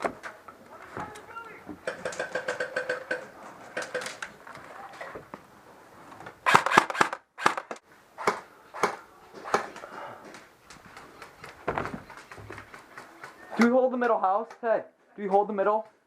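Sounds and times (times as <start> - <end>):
airsoft guns firing: 1.8 - 4.2, 6.4 - 9.8.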